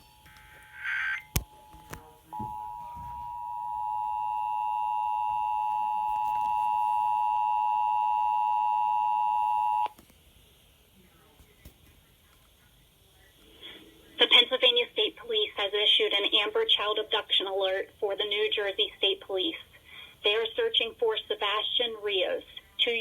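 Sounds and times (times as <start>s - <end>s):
dual-tone alarm signal: 0.0s - 9.9s.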